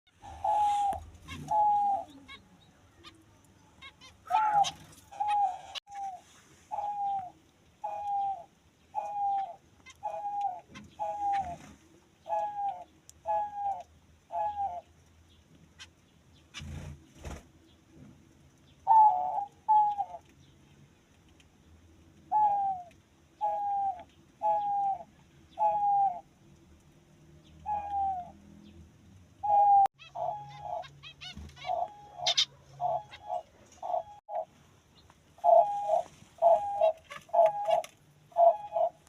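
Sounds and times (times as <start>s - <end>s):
dove cooing: 0.1s - 3.2s, 3.8s - 14.8s, 18.9s - 20.2s, 22.3s - 26.3s, 27.6s - 28.4s, 29.4s - 34.5s, 35.4s - 39.0s.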